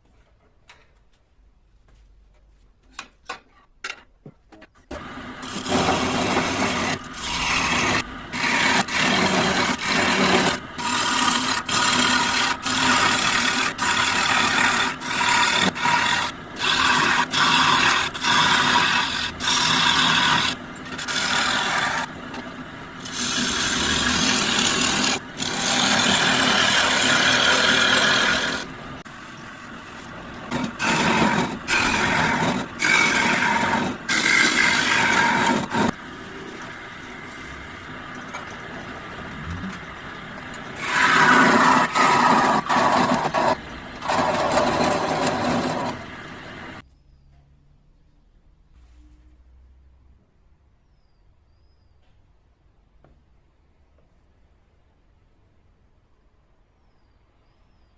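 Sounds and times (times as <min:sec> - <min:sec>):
power tool cutting wood: 0:05.0 - 0:22.2, 0:23.0 - 0:28.7, 0:29.8 - 0:36.7, 0:39.5 - 0:46.8.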